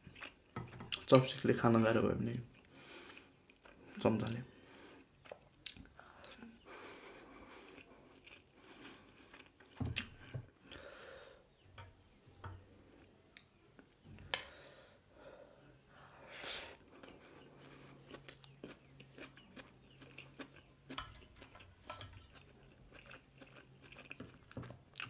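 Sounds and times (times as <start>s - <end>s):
chewing and biting food: 7.2s - 10.8s, 16.9s - 25.0s.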